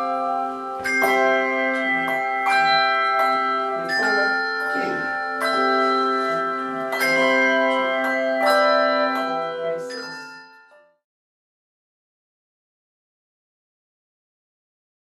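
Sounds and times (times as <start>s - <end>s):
handbells ringing: 0.0s - 11.0s.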